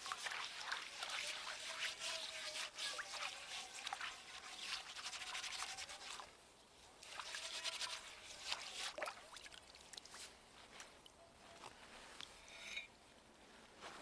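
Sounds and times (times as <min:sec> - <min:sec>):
rubbing scraping strokes: 0:00.0 - 0:06.3, 0:07.0 - 0:09.0.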